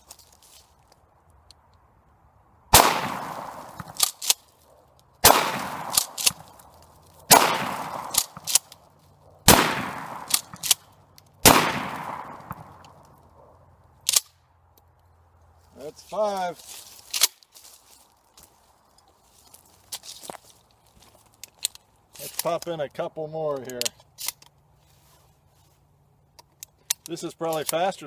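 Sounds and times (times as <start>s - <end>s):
shotgun blasts with echo: 2.7s - 4.0s, 5.2s - 6.5s, 7.3s - 8.6s, 9.4s - 10.7s, 11.4s - 12.8s.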